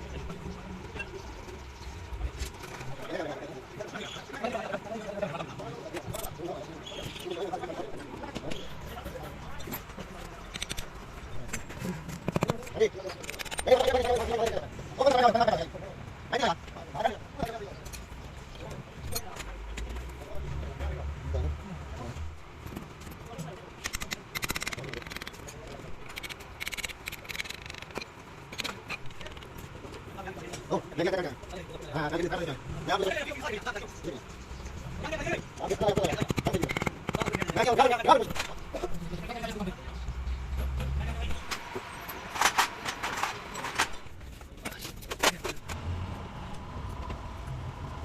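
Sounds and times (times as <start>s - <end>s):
fast even clicking of hand tools: 23.8s - 29.4s, 35.8s - 38.3s.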